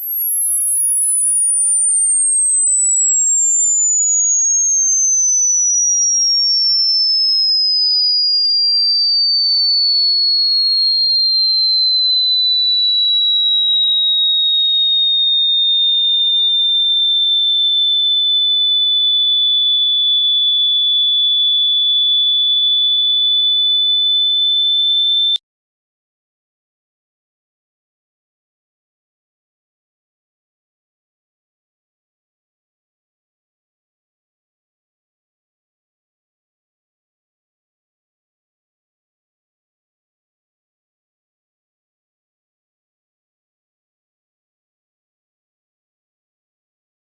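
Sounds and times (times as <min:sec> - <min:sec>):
electronic tone gliding down: 0:00.0 - 0:07.1.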